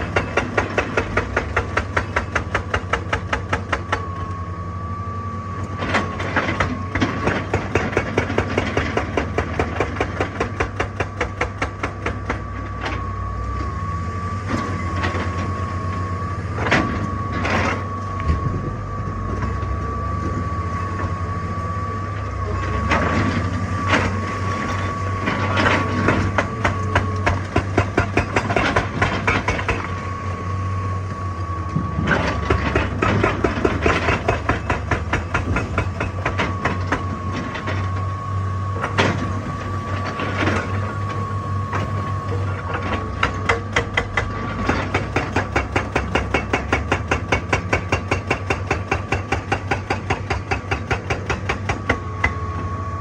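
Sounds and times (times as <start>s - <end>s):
hydraulic breaker hammering rock: 0.0s - 4.3s, 5.8s - 12.6s, 22.8s - 30.2s, 31.8s - 37.8s, 38.8s - 52.7s
diesel engine drone: 0.0s - 53.0s.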